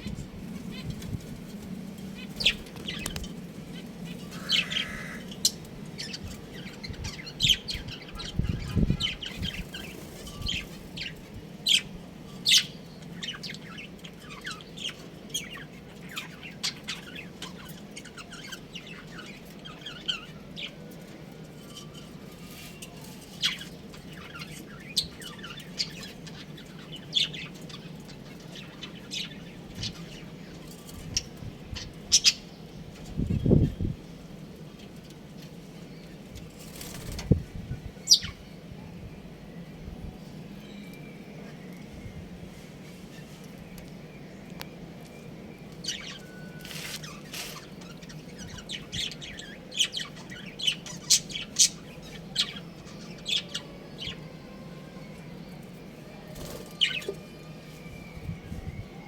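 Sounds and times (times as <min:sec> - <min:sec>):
budgerigars chirping: 0:04.2 - 0:06.2.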